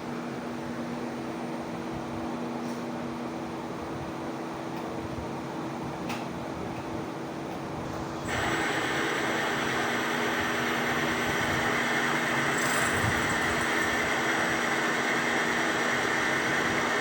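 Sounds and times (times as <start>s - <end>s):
machine mechanical hum: 0.0s - 17.0s
machine hiss and high whine: 7.9s - 17.0s.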